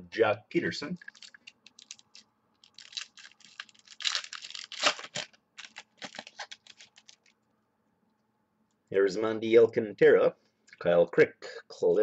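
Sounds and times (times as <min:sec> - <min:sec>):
card pack tearing and rustling: 0:01.0 - 0:07.3.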